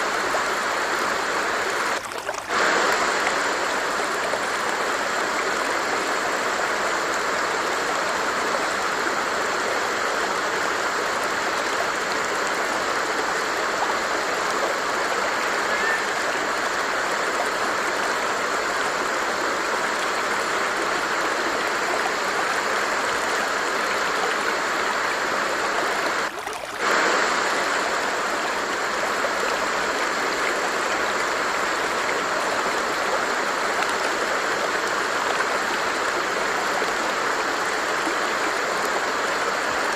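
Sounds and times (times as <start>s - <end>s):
water stream flowing: 0.0s - 39.9s.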